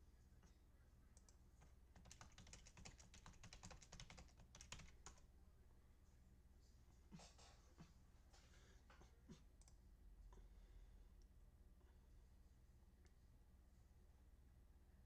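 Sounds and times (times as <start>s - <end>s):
keyboard typing: 1.2s - 5.3s.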